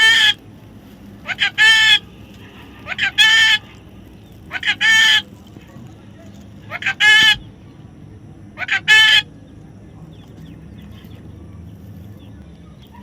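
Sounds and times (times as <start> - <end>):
parrot calling loudly: 0.0 - 0.4, 1.2 - 3.8, 4.4 - 5.3, 6.6 - 7.5, 8.6 - 9.3.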